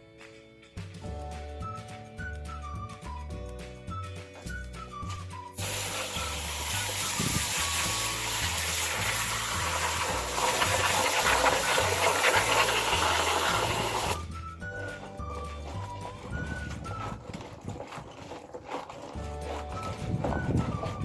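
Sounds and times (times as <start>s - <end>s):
tap water running: 5.6s - 21.0s.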